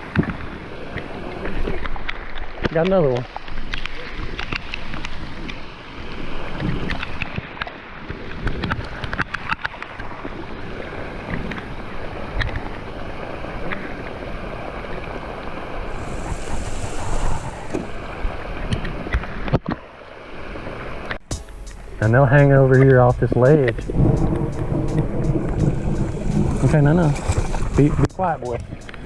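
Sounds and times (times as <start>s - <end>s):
wind buffeting microphone: 21.3s - 29.0s.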